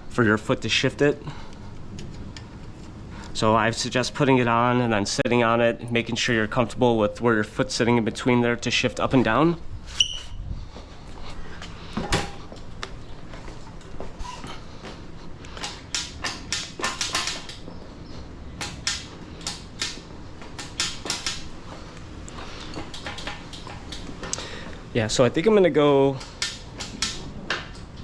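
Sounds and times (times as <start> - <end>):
metal clicks and knocks of tools: 15.6 - 17.6.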